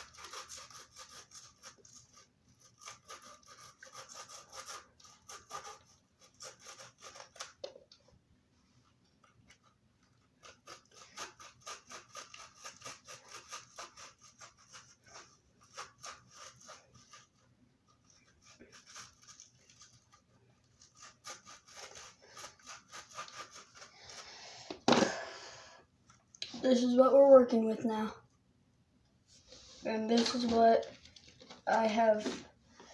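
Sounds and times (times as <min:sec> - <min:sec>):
knife sawing and scraping rubber: 0:00.0 - 0:07.7, 0:09.6 - 0:24.8.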